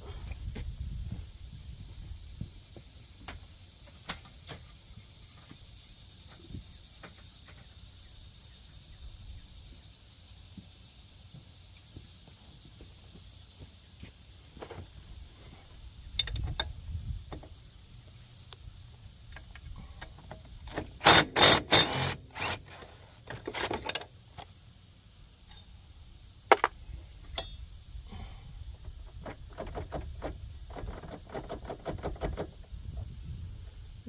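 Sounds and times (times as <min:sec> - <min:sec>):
hand tools clinking on metal: 0:27.3 - 0:27.6.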